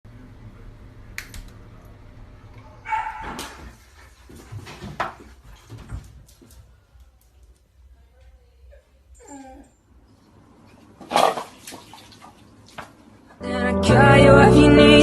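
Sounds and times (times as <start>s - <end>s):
dog barking: 2.8s - 3.7s.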